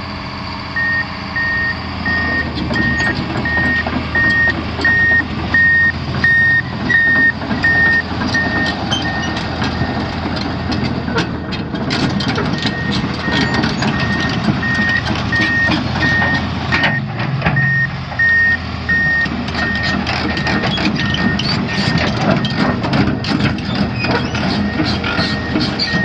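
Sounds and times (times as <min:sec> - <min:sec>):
excavator diesel engine running: 0:00.0 - 0:26.0
travel alarm beeping: 0:00.8 - 0:10.0, 0:12.6 - 0:19.8.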